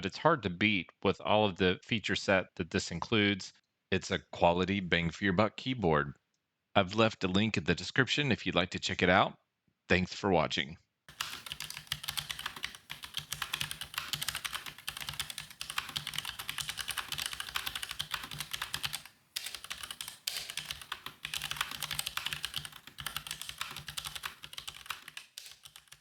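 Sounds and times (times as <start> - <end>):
mechanical keyboard typing: 11.1 - 26.0.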